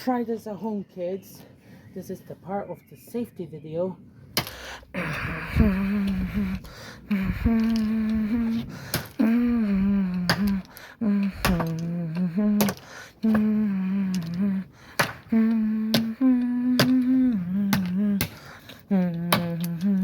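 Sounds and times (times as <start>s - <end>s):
person humming a tune: 4.9s - 20.0s.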